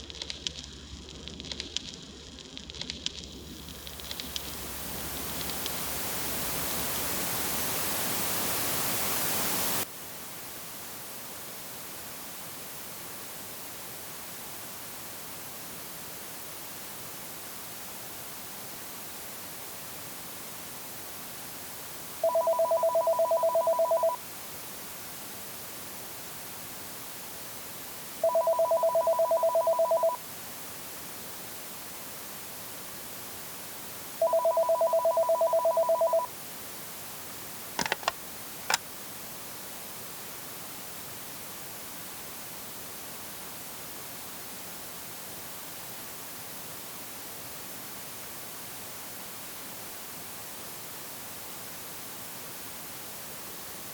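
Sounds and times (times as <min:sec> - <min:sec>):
steady hiss: 0:00.0 - 0:22.2, 0:24.2 - 0:28.2
telephone two-tone warbling ring: 0:22.2 - 0:24.2, 0:28.2 - 0:30.2, 0:34.2 - 0:36.3
sharp clicks: 0:37.8 - 0:38.8.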